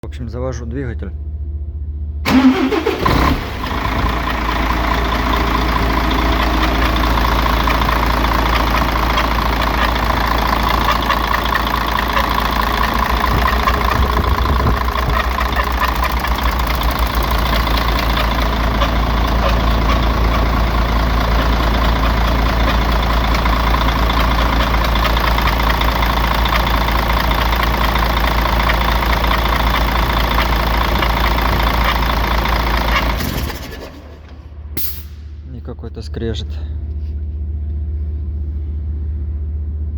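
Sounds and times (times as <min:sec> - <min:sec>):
diesel engine starting and idling: 0:00.0 - 0:39.9
grinding noise: 0:03.9 - 0:34.4.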